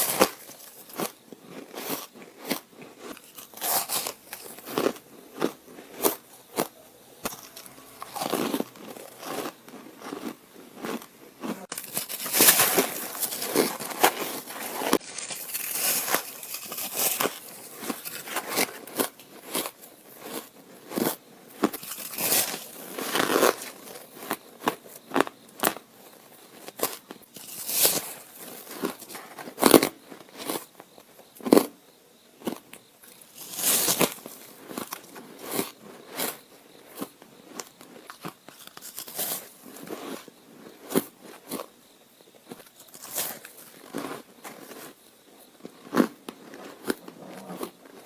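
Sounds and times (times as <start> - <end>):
ice crunched between teeth: 0.0 - 25.8, 26.6 - 30.7, 33.1 - 35.8, 37.5 - 40.3, 42.5 - 45.0.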